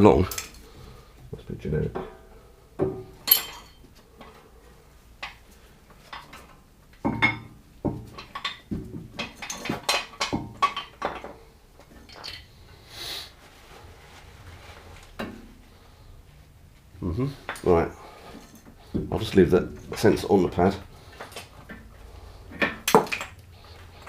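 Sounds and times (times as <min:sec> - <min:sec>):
metal tools clinking: 0:03.2 - 0:03.9, 0:09.2 - 0:11.3.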